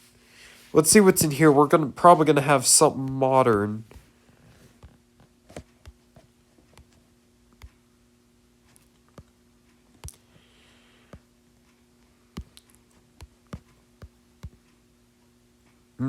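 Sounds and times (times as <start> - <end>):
faint steady hum: 0.0 - 16.0
fingertips tapping touchscreen: 12.3 - 14.7.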